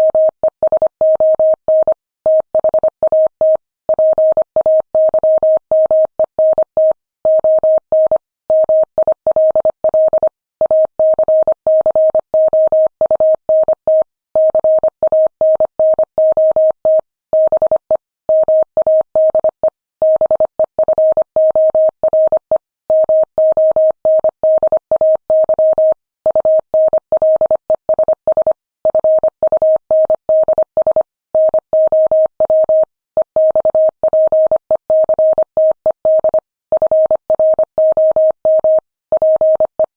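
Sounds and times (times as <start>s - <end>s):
morse code tone: 28.2s - 39.9s.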